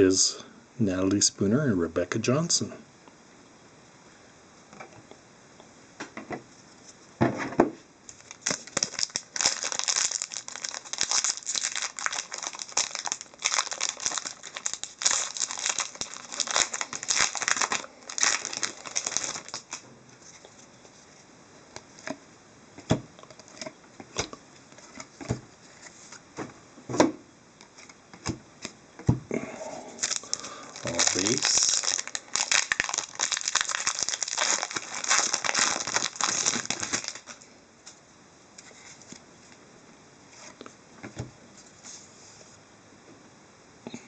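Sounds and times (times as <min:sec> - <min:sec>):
wrappers tearing and crinkling: 0:08.1 - 0:20.5, 0:30.0 - 0:37.4.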